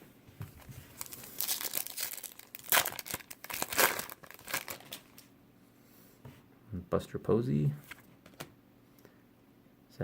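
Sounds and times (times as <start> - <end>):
wrapper tearing and crinkling: 0.9 - 5.3.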